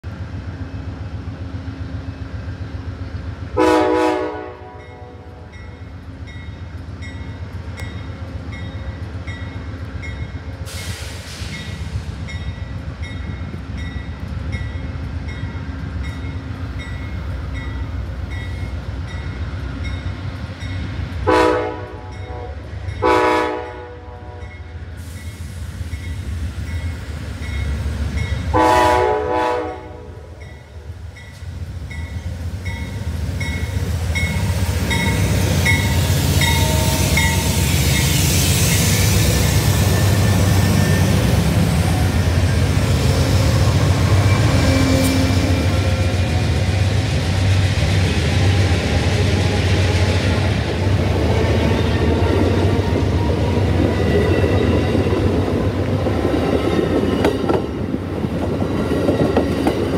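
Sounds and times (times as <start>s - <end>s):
locomotive air horn blasts: 3.6s - 5.4s, 21.2s - 24.6s, 28.5s - 30.3s.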